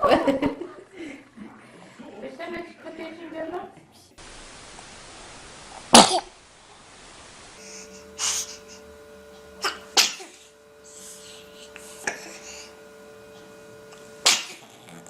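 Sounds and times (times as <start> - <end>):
baby sneezing: 5.9 - 6.3, 9.6 - 10.4, 14.2 - 14.8.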